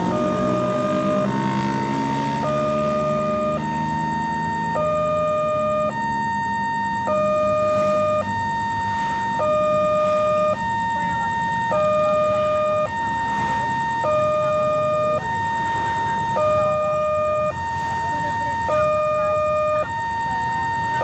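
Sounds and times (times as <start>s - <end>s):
two-tone warning siren: 0.0s - 21.0s.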